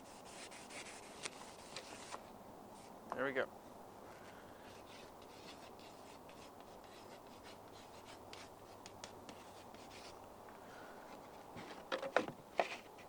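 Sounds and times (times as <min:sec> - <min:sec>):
writing strokes on a board: 0:04.7 - 0:10.2.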